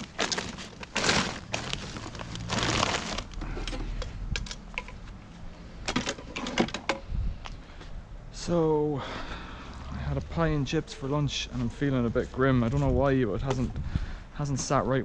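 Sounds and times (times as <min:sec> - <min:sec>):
rubbish rustling in bin: 0:00.0 - 0:03.6.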